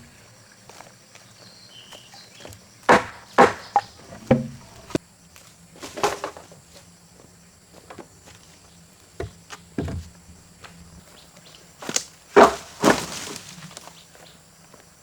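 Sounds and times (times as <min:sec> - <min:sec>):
sharp knocks: 0:02.9 - 0:05.0, 0:09.2 - 0:10.1.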